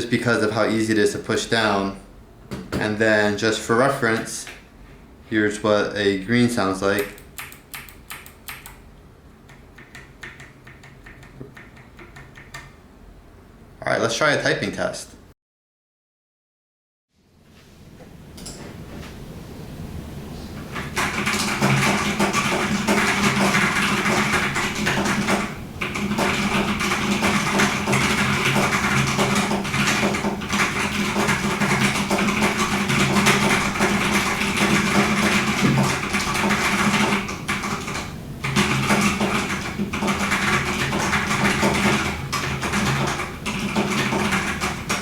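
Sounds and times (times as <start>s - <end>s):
fast typing on mechanical keyboard: 7.0s - 8.8s, 9.5s - 12.7s, 20.8s - 45.0s.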